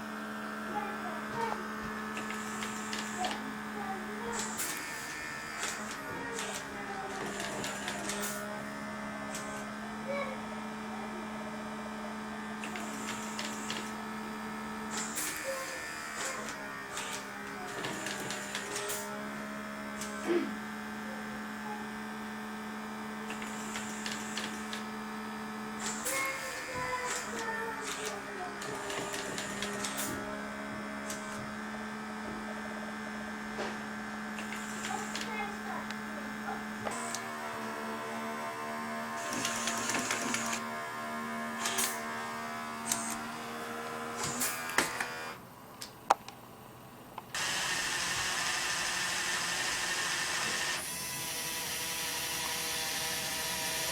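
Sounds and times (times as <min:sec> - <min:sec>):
small electric motors humming: 0:00.0 - 0:45.5, 0:47.2 - 0:53.9
clicks and rattles of moving parts: 0:05.6 - 0:08.5, 0:41.6 - 0:42.1.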